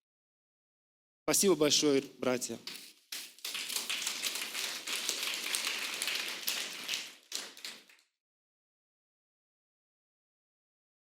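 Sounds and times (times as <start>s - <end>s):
crowd applauding: 3.4s - 7.9s.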